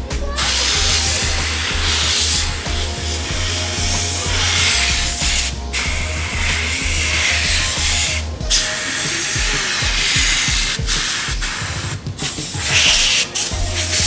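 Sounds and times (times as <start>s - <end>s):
compressed air blow gun hissing: 0.0s - 14.0s.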